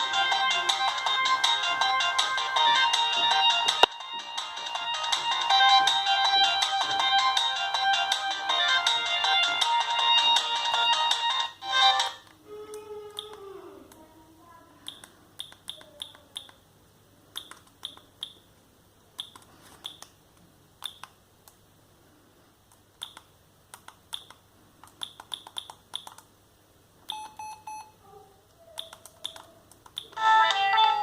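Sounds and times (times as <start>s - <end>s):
short high key beeps: 27.1s - 28.0s.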